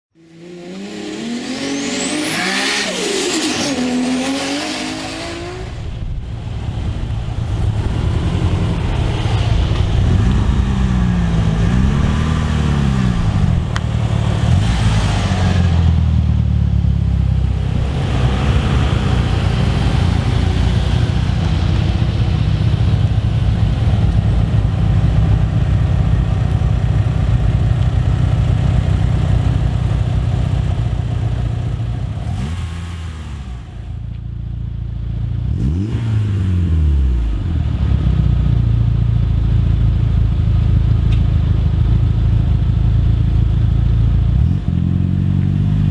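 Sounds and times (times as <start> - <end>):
car engines revving: 0.2 - 34.3, 35.3 - 39.1
low engine drone: 3.7 - 35.3.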